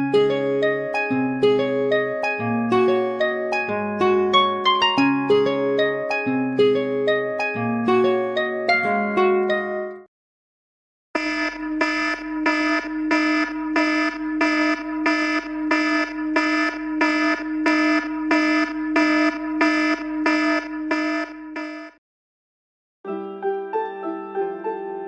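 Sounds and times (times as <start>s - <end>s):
electronic alarm beeping: 11.2s - 22.0s.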